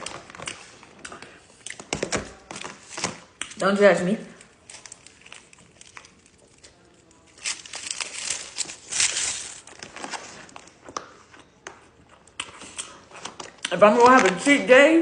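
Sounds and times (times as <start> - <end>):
crinkly crunchy bursts: 7.3 - 10.5.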